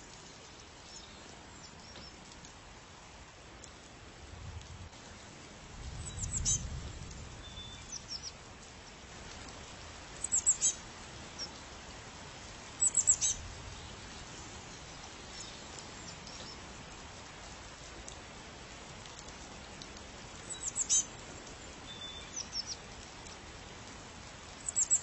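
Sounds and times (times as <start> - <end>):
small bird chirping: 6.0 - 6.7, 10.2 - 10.8, 12.8 - 13.4, 20.5 - 21.1, 21.9 - 22.8, 24.6 - 25.0.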